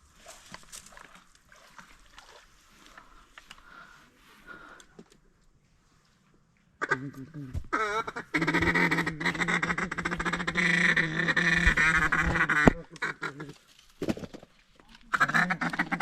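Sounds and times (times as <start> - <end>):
ducks quacking: 6.8 - 13.6, 15.1 - 16.0.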